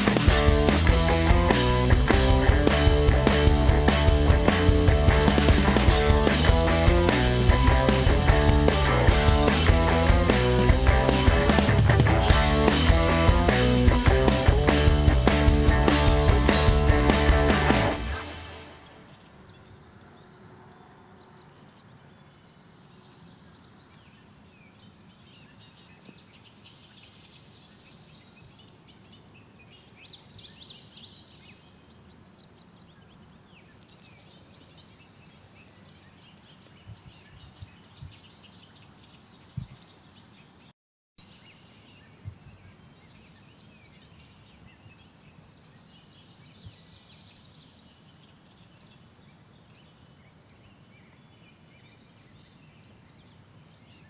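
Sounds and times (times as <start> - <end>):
high rapid bird trill: 0.0 - 19.6.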